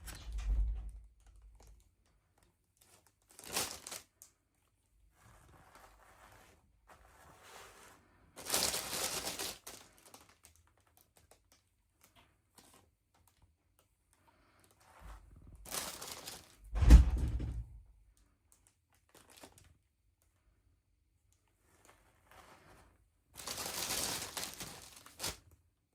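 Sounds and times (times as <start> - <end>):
packaging crinkling and rustling: 1.2 - 4.3, 8.4 - 13.4, 15.5 - 16.7, 18.5 - 19.8, 23.4 - 25.5
heavy thud: 16.7 - 17.8.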